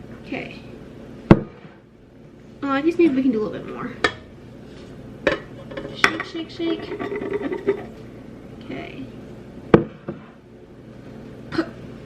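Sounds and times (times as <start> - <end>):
kitchen handling sounds: 5.2 - 7.9.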